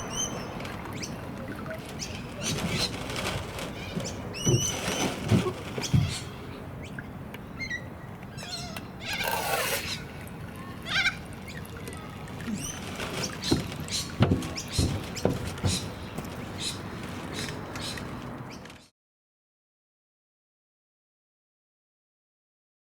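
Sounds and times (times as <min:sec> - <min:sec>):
small birds chirping: 0:00.0 - 0:18.9
splashing water: 0:09.2 - 0:18.3.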